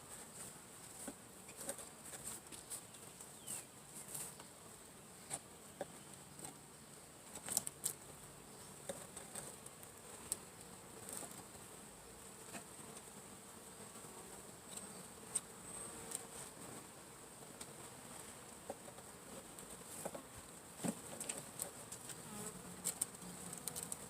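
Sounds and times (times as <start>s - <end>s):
honeybees buzzing: 7.7s - 24.0s.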